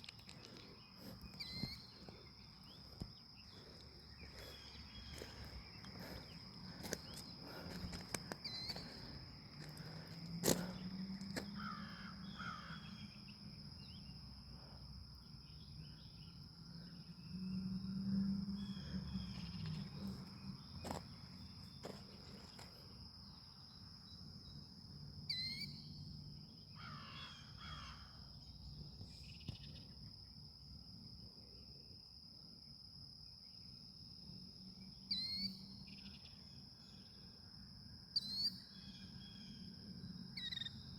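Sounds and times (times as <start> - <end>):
bird calls: 0.0 - 2.8
high-pitched insect drone: 0.0 - 30.7, 33.2 - 40.9.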